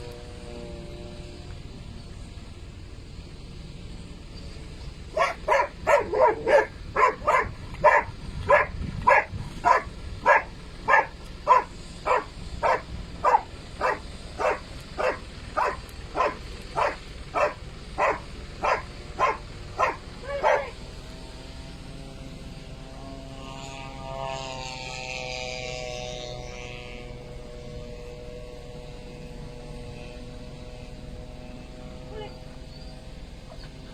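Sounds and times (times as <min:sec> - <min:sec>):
faint steady hum: 0:00.0 - 0:33.9
dog barking: 0:05.2 - 0:20.8.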